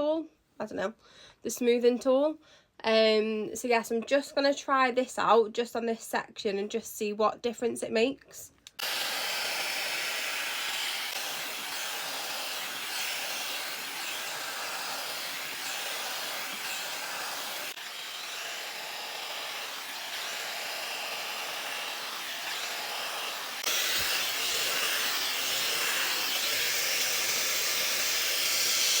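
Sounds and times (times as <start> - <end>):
hair dryer blowing: 8.8 - 29.0.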